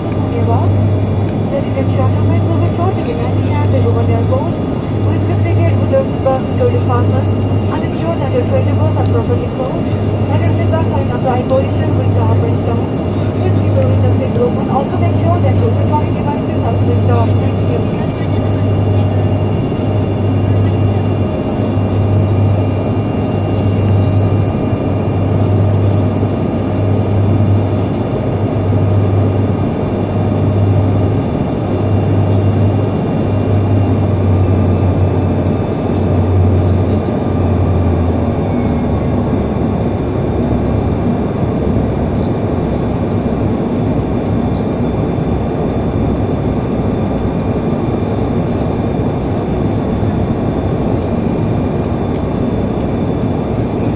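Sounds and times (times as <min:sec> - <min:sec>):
airliner cabin engine roar: 0:00.0 - 0:53.9
low pulsing hum: 0:00.0 - 0:53.9.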